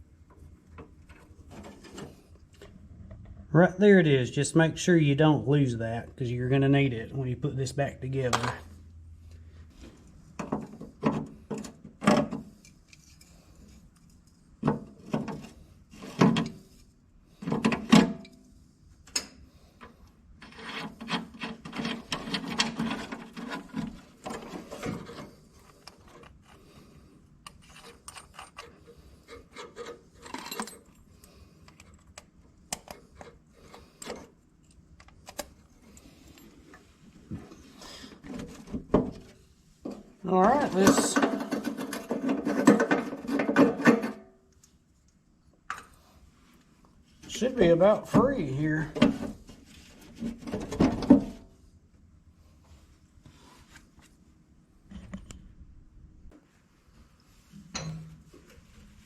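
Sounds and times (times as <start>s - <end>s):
metal parts and tools clunking: 27.5s - 31.1s, 39.9s - 44.3s, 57.6s - 58.6s.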